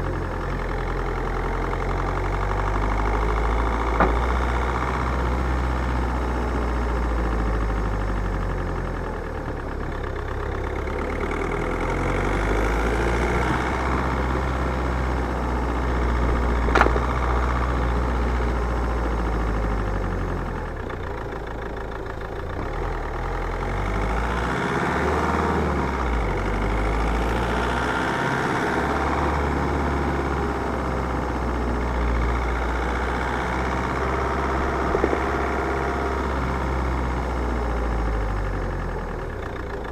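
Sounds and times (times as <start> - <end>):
car engine and road noise: 0.0 - 39.9
sharp knock: 4.0 - 4.4, 16.7 - 17.2.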